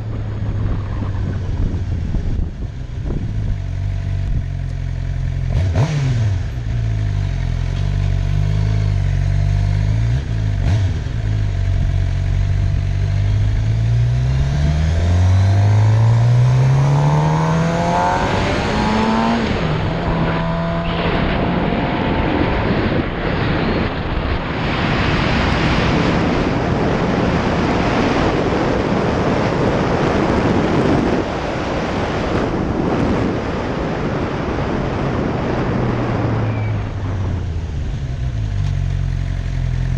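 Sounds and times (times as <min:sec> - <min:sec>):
wind noise on microphone: 0:00.0 - 0:04.7, 0:10.1 - 0:38.5
vehicle engine running: 0:00.0 - 0:24.5, 0:33.8 - 0:39.9.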